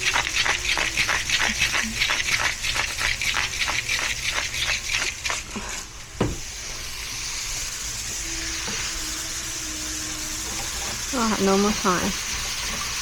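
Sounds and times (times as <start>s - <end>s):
spatula stirring strokes: 0.0s - 13.0s
single knock: 6.2s - 6.4s.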